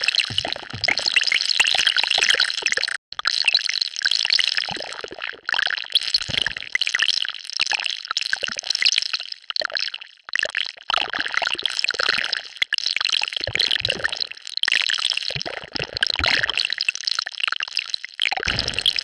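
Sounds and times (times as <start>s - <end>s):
wet bubbling sound effect: 0.0s - 6.8s, 18.4s - 19.0s.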